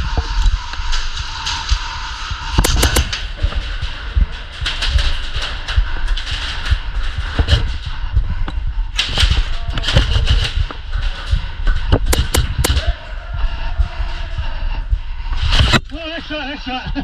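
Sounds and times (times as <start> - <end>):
clicks: 2.5 - 7.8, 8.4 - 13.0
sharp cracks of airsoft shots: 2.6 - 3.3, 12.0 - 13.0.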